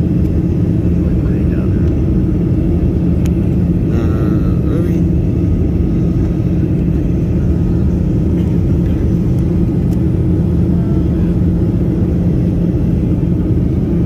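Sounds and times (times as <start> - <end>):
aircraft engine and airflow rumble: 0.0 - 14.0
constant cabin hum: 0.0 - 14.0.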